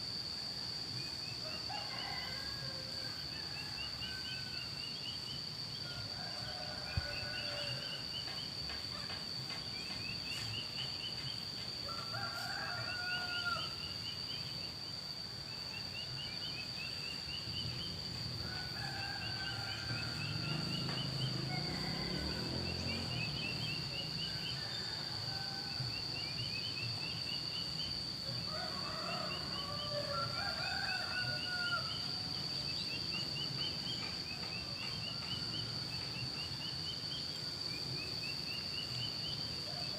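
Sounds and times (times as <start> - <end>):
roosters crowing: 1.4 - 4.5, 5.8 - 8.2, 11.8 - 13.9, 18.4 - 26.2, 28.0 - 32.6.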